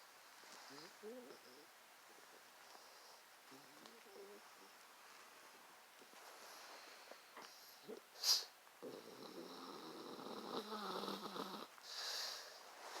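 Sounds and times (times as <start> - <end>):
dog snoring: 0.7 - 4.8, 8.8 - 11.8
breathy exhale: 11.8 - 12.7.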